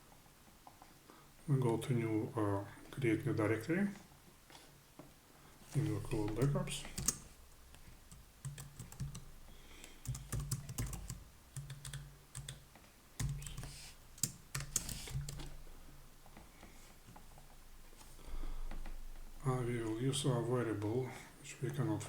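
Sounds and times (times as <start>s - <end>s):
keyboard keystroke clicks: 6.3s - 7.2s.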